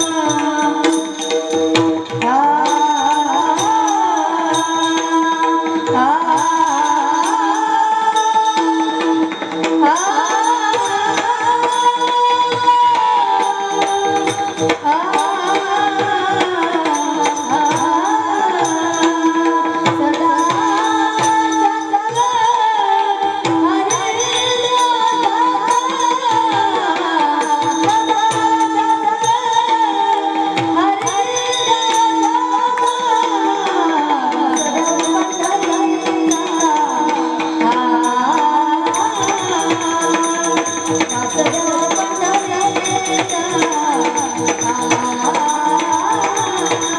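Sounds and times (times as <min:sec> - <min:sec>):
jingling hand percussion: 0:00.0 - 0:46.9
drum keeping time: 0:30.4 - 0:46.9.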